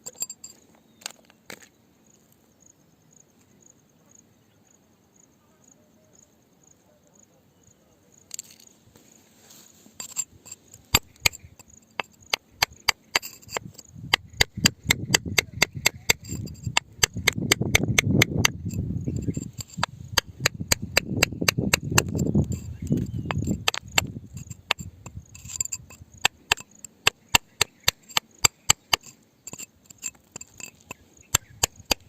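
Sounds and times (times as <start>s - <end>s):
hand tool striking rock: 0.0s - 0.5s, 10.0s - 32.0s.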